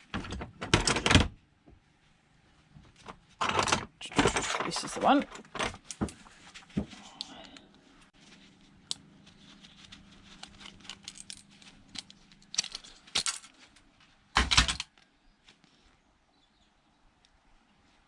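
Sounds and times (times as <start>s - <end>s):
small metal parts clinking: 10.4s - 13.6s.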